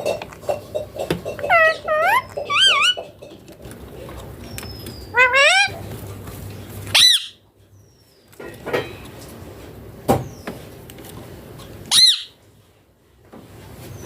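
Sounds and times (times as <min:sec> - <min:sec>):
parakeet calling: 0:01.2 - 0:03.2, 0:04.4 - 0:05.9, 0:06.9 - 0:08.0, 0:11.9 - 0:12.4
parakeet squawk: 0:01.4 - 0:03.1, 0:04.7 - 0:05.8, 0:06.9 - 0:07.4, 0:11.9 - 0:12.4.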